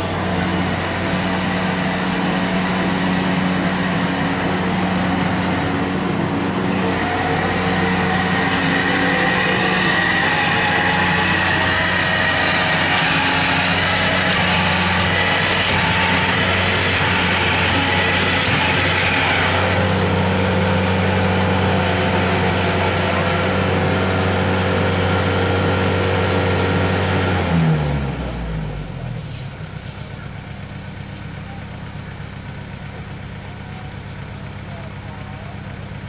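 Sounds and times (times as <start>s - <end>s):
machinery noise: 0.0s - 27.7s
combine harvester engine running: 0.0s - 36.0s.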